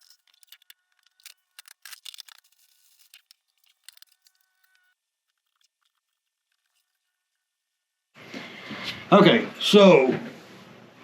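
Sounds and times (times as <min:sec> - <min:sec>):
sped-up packaging rustling and clatter: 0:00.0 - 0:08.0.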